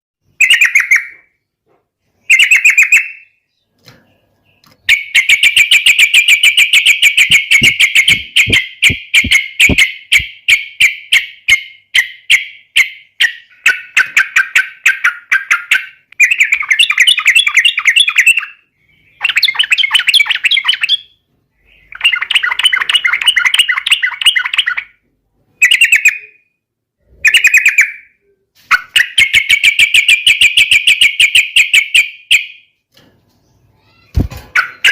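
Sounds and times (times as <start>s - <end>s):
bird singing rapid notes: 0.2s - 25.0s, 33.4s - 34.9s.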